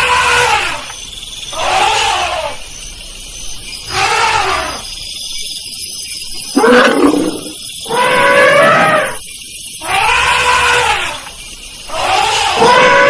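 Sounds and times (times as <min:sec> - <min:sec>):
elephant trumpeting: 0:01.6 - 0:02.6, 0:03.9 - 0:04.8, 0:06.6 - 0:09.2, 0:09.8 - 0:11.2, 0:11.9 - 0:13.0.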